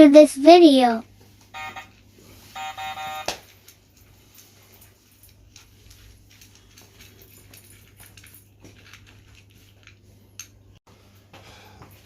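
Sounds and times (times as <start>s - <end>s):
cats crunching dry food: 5.3s - 10.4s.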